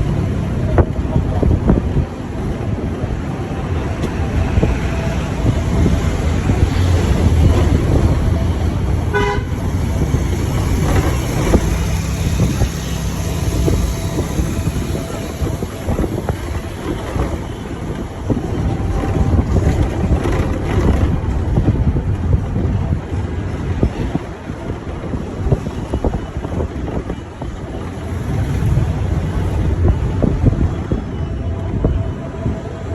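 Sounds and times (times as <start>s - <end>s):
vehicle driving rumble: 0.0s - 32.9s
vehicle horn toot: 6.6s - 15.8s.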